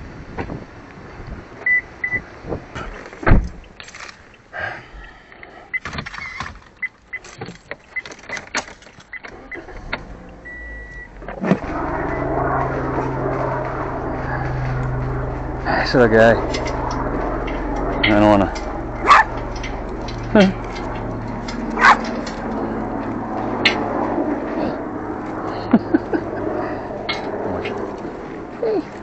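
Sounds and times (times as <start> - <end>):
car low hum: 0.0 - 29.0
clicks and handling noise: 2.9 - 4.5, 5.8 - 10.4, 16.4 - 23.8.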